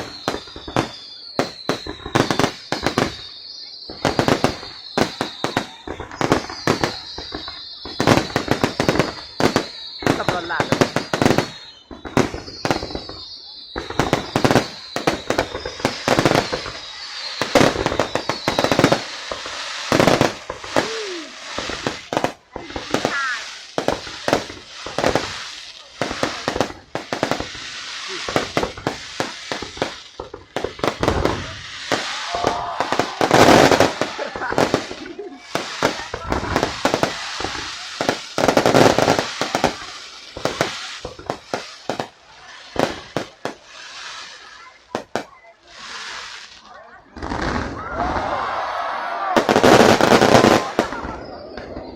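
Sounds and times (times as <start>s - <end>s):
fireworks bangs and crackling: 0.0s - 51.9s
steady hiss: 14.0s - 46.7s.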